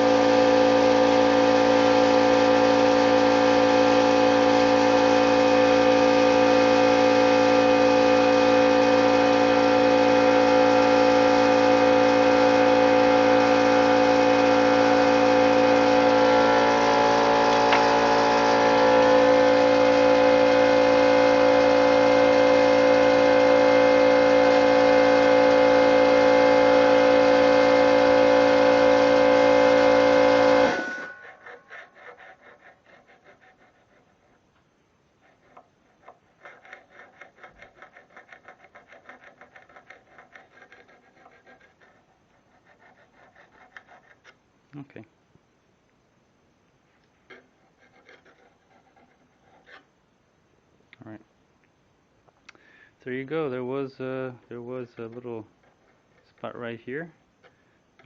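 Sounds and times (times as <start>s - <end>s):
die grinder whining: 0.0s - 33.7s.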